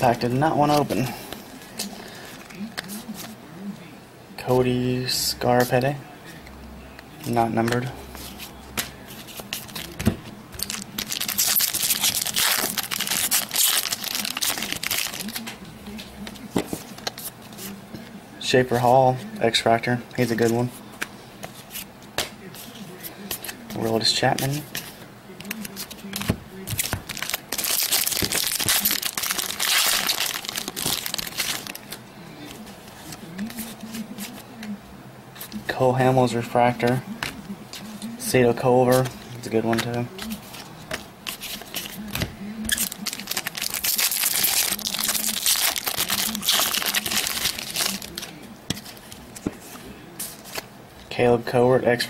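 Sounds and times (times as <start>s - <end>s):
foil wrapper tearing and crinkling: 10.6s - 15.4s, 26.7s - 32.0s, 42.7s - 48.3s.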